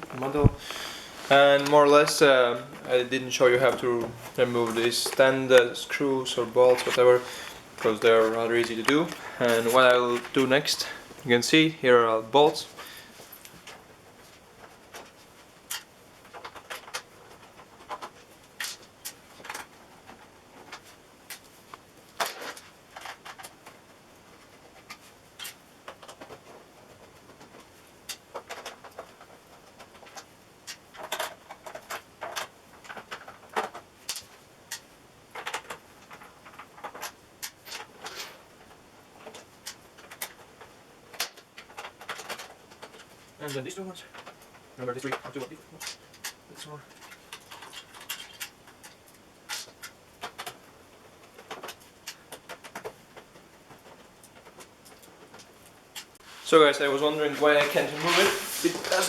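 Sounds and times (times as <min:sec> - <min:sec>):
plastic cover being handled: 0:00.0 - 0:15.2, 0:56.2 - 0:59.0.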